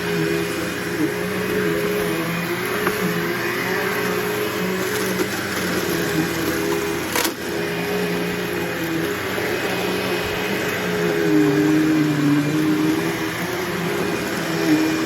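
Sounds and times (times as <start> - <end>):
vacuum cleaner motor hum: 0.0 - 15.0.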